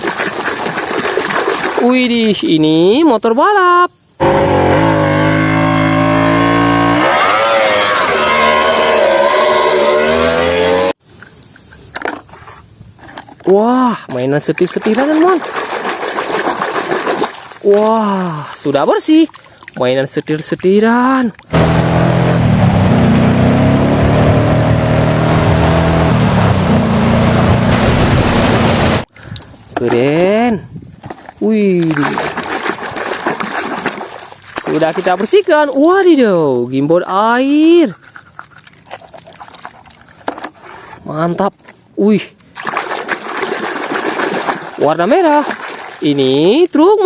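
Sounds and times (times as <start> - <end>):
motorcycle engine revving: 4.2 - 11.0, 21.5 - 29.1.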